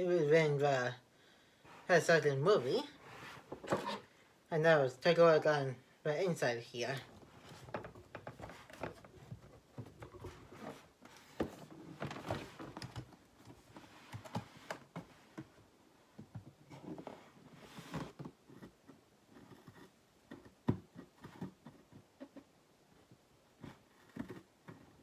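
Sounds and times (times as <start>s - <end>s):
rustling scrapes: 1.7s - 4.1s.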